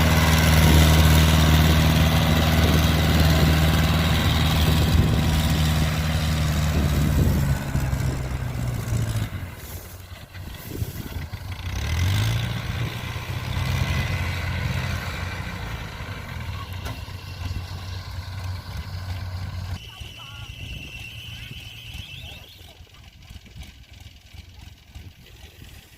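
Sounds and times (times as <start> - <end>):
combine harvester diesel engine: 0.0 - 25.9.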